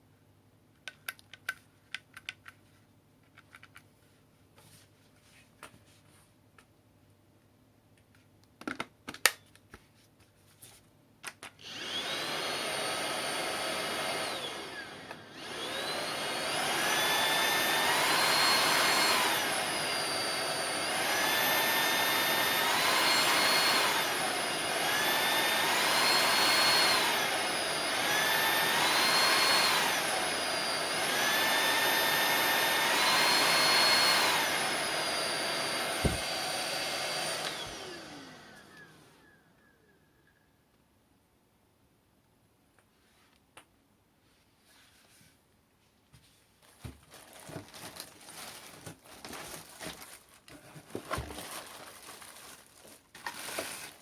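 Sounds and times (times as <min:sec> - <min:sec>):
vacuum cleaner motor whine: 0:11.6 - 0:40.5, 0:52.3 - 0:54.0.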